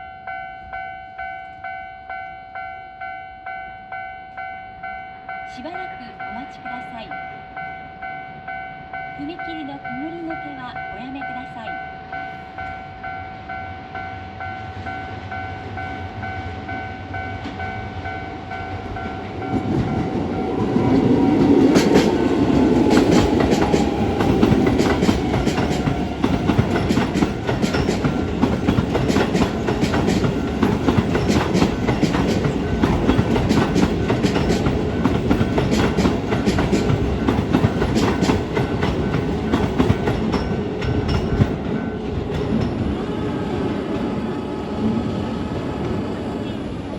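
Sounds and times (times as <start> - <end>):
level crossing warning bell ringing: 0.0 - 42.9
electric train passing: 0.0 - 46.9
wheels clattering over rail joints: 19.2 - 43.0.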